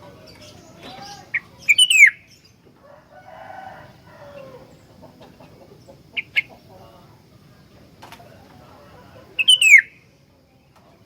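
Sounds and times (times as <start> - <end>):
bird calling with falling whistles: 0.5 - 2.5, 9.4 - 10.1.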